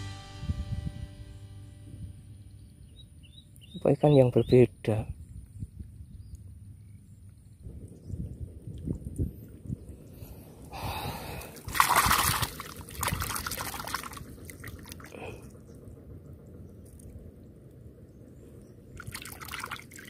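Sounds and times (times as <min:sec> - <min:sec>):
water splashing and dripping: 0:11.2 - 0:15.4, 0:18.9 - 0:20.0.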